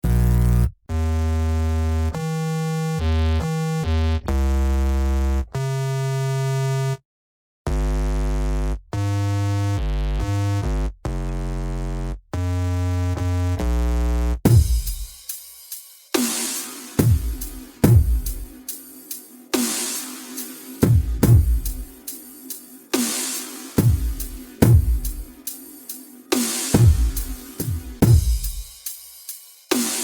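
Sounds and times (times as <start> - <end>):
buzzy synth playing held notes: 17.0 - 28.6.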